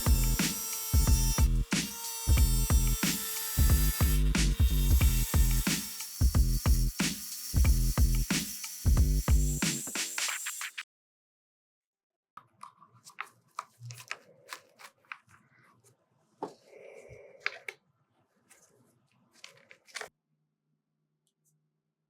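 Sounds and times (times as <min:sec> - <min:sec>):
scraping or crinkling: 0:12.6 - 0:20.1.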